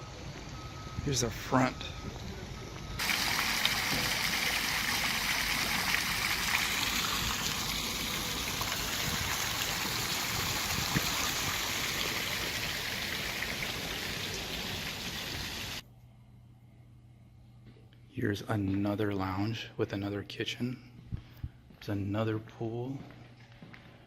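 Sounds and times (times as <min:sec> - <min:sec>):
running splashing water: 0:03.0 - 0:15.8.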